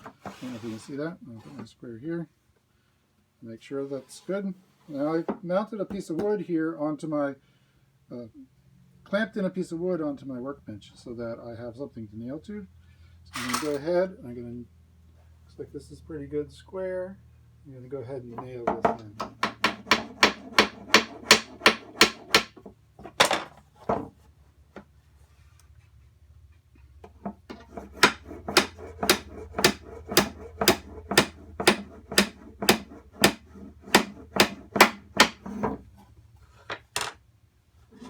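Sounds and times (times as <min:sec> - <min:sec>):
hammer driving nails into wood: 0:19.2 - 0:22.6, 0:27.5 - 0:35.7.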